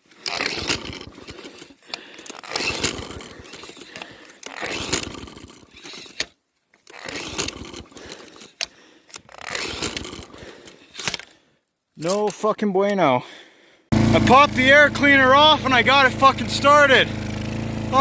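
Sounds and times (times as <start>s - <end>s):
lawnmower recoil starter pulled: 0.0s - 11.4s, 13.9s - 18.0s.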